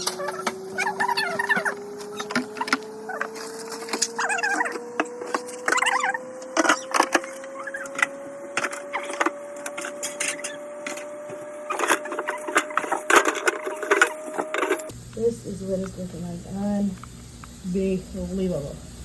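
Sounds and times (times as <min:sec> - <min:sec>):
containers knocking and clattering: 0:11.7 - 0:14.9.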